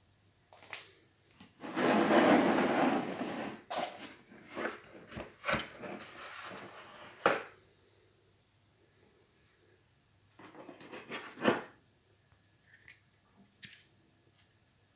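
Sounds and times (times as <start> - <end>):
rubbing and rustling: 1.6 - 7.5.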